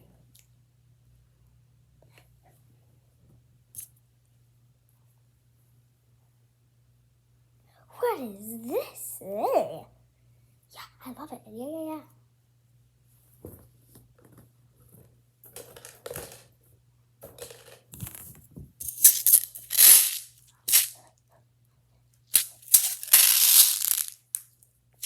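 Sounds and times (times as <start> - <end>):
plastic toys rattling: 15.5 - 16.5, 17.2 - 21.0, 22.4 - 24.5.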